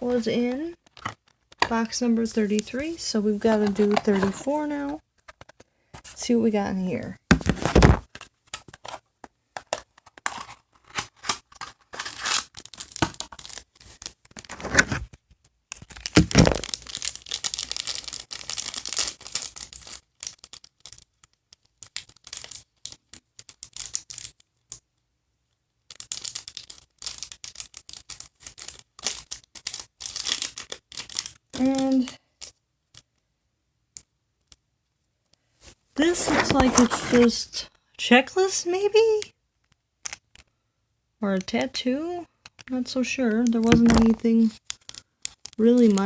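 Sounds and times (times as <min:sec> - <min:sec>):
paper and plastic crinkling: 0:00.9 - 0:06.2, 0:07.4 - 0:24.4, 0:25.9 - 0:32.6, 0:35.6 - 0:37.6, 0:43.0 - 0:46.0
packaging being torn open: 0:09.7 - 0:24.4, 0:25.9 - 0:32.1.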